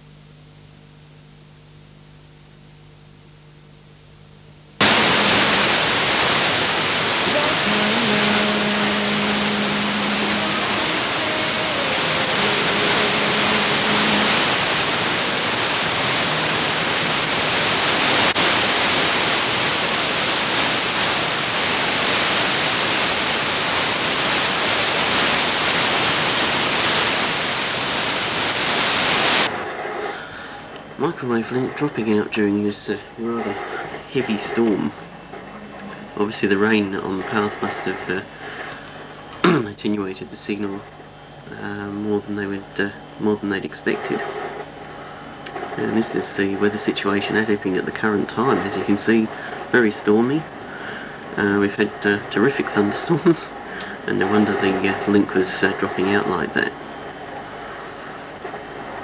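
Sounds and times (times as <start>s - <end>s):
low buzz: 0.0s - 21.9s, 24.8s - 58.5s
tv static hiss: 0.0s - 59.0s
faint tones: 4.8s - 18.8s, 29.3s - 59.0s.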